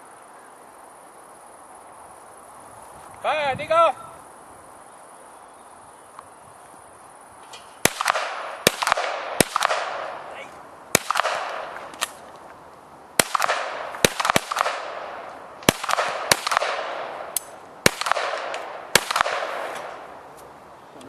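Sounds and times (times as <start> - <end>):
pistol shots with echo: 7.8 - 12.2, 13.2 - 20.1.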